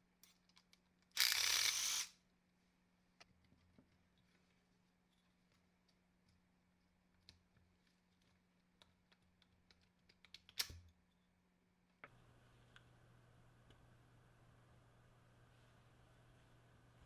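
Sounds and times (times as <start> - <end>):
faint clicks and light taps: 3.2 - 10.7.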